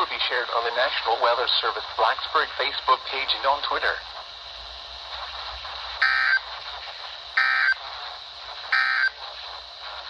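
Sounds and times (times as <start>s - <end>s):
radio reception hiss: 0.0s - 10.0s
warbling digital data bursts: 5.1s - 9.6s.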